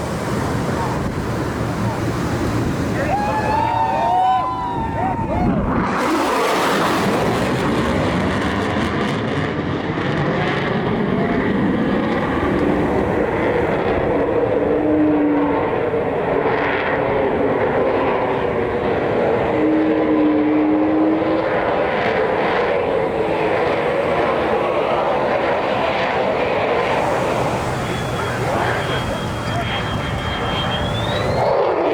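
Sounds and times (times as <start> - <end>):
jet aircraft engine: 0.0 - 31.9
faint held tone: 26.9 - 31.5.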